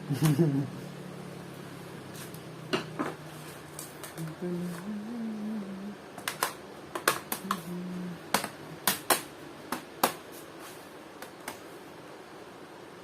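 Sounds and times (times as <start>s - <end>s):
laptop keys clicking: 6.2s - 7.6s.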